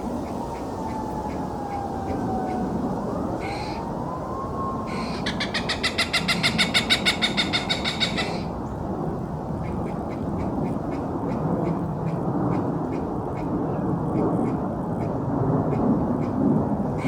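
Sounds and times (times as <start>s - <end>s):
hawk cackling call: 5.2s - 8.5s.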